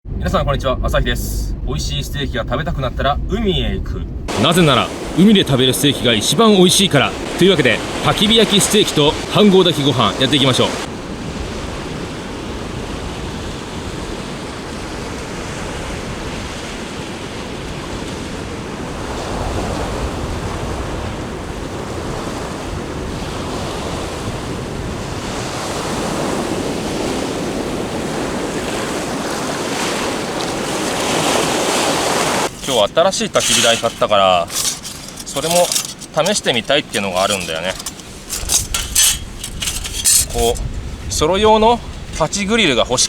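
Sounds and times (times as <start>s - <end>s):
sea waves washing onto shore: 4.3s - 43.0s
wind on microphone: 10.6s - 32.6s, 37.8s - 42.6s.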